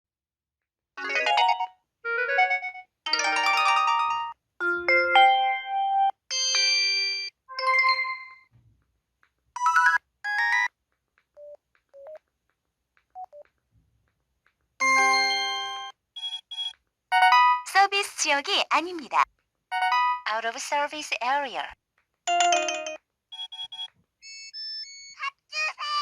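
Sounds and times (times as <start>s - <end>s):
phone alert chimes and jingles: 14.8s - 17.7s, 19.7s - 20.3s, 22.3s - 25.2s.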